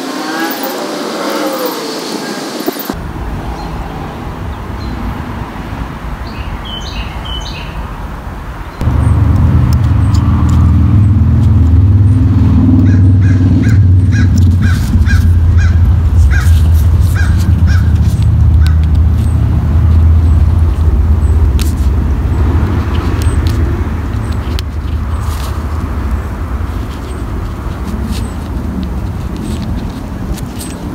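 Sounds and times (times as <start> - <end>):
bird calling: 0.0 - 3.0, 12.8 - 19.5
loud low rumble: 8.8 - 29.4.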